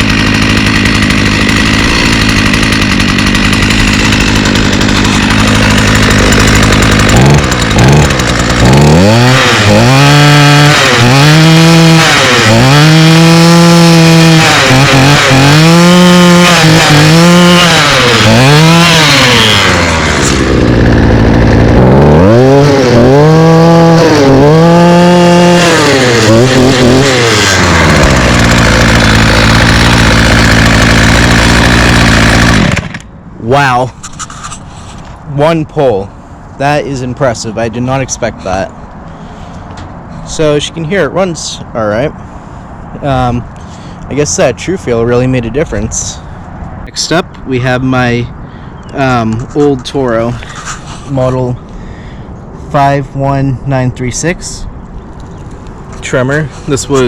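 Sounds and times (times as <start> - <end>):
string trimmer engine revving: 0.0 - 35.8.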